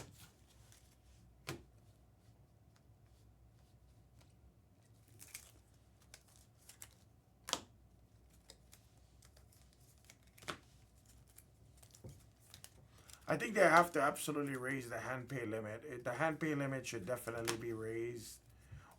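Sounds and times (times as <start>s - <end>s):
low room hum: 0.0s - 18.9s
trading cards tapping and flicking: 17.3s - 18.1s.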